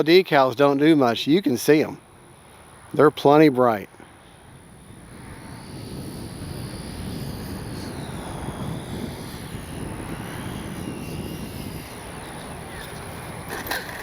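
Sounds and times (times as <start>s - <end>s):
high fan whine: 0.0s - 14.0s
rushing air noise: 3.9s - 14.0s.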